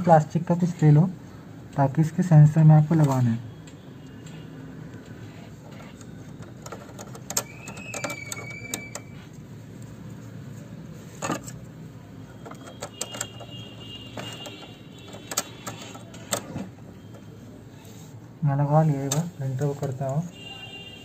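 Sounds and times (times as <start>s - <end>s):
plastic parts clicking and tapping: 5.0s - 9.1s, 12.4s - 17.3s.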